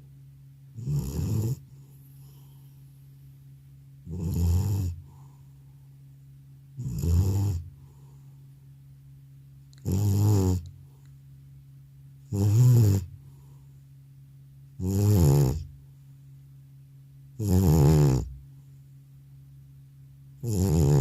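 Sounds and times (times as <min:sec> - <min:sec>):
cat snoring: 0:00.8 - 0:02.6, 0:04.0 - 0:05.4, 0:06.8 - 0:08.1, 0:09.8 - 0:10.7, 0:12.3 - 0:13.4, 0:14.8 - 0:15.7, 0:17.4 - 0:18.4, 0:20.4 - 0:21.0.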